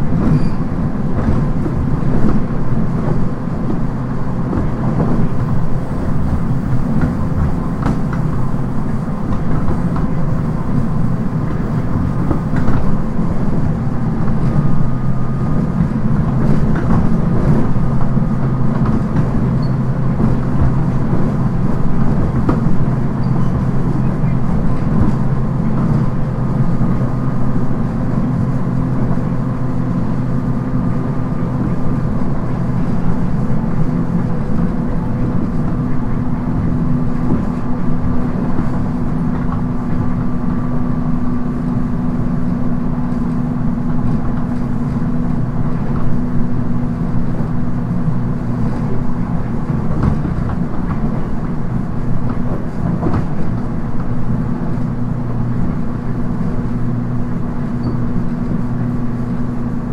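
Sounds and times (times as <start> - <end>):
electric train running: 4.9 - 13.6.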